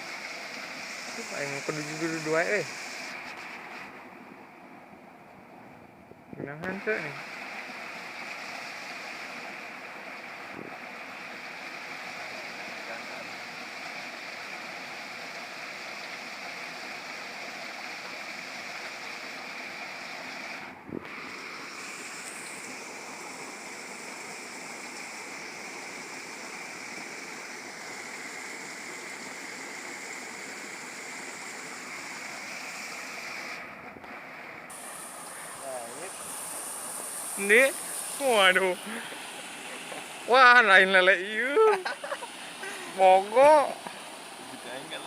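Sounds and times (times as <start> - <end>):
flowing water rushing: 0.0 - 45.0.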